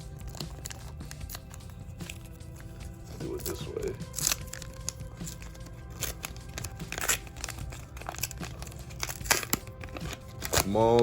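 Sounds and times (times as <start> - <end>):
foil pack tearing and crinkling: 0.0 - 11.0
quiet background music: 0.0 - 11.0.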